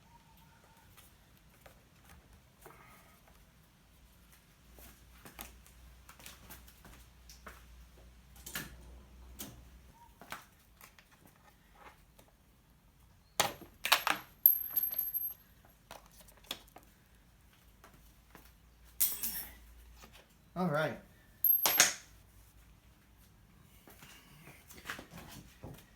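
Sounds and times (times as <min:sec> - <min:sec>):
metal parts clicking and knocking: 0:13.4 - 0:15.4, 0:21.4 - 0:22.1
metallic clinks ringing: 0:13.9 - 0:15.5, 0:19.0 - 0:19.6, 0:21.4 - 0:22.0.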